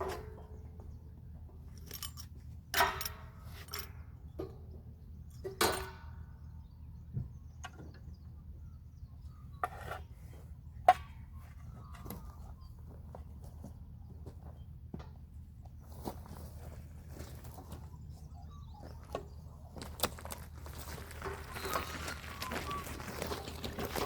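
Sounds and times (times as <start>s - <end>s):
metal tools clinking: 1.6s - 4.1s.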